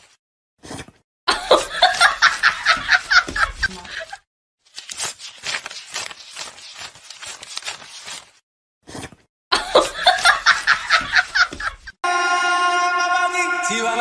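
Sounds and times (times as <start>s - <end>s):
person laughing: 1.3s - 4.2s, 9.5s - 11.9s.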